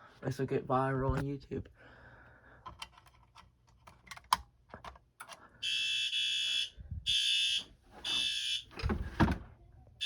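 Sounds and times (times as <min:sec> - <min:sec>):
fire alarm horn blaring: 0:05.6 - 0:08.7.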